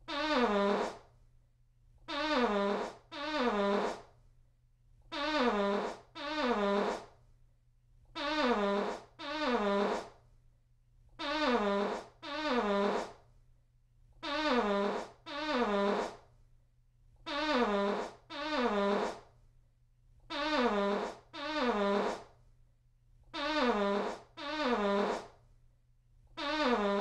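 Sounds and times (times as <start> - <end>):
buzzing fart sound effect: 0.0 - 1.0, 2.1 - 4.1, 5.1 - 7.1, 8.2 - 10.2, 11.2 - 13.2, 14.2 - 16.2, 17.3 - 19.3, 20.3 - 22.3, 23.4 - 25.4, 26.4 - 27.0.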